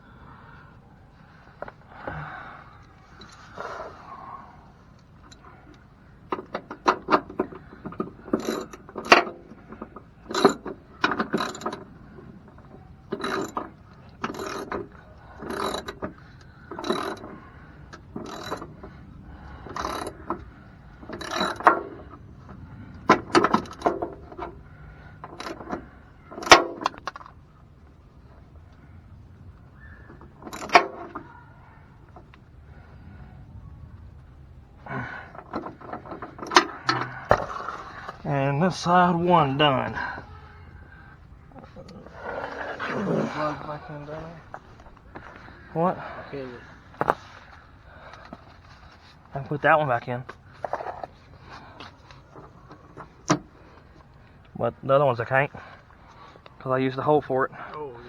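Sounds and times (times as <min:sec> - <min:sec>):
ratchet wrench clicking: 0:13.2 - 0:13.6, 0:15.4 - 0:17.4, 0:18.2 - 0:18.8, 0:21.2 - 0:21.8.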